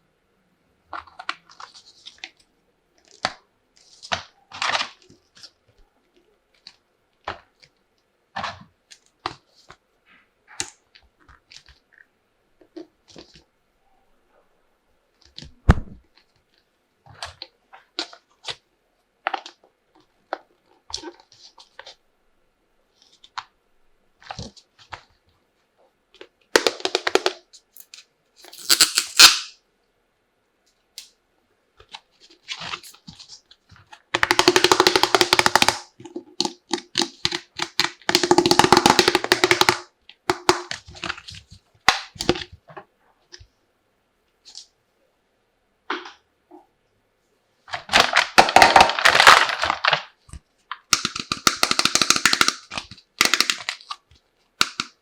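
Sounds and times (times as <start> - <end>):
packaging rustling: 47.7 - 50.1
plastic toy pieces clicking: 50.9 - 53.9.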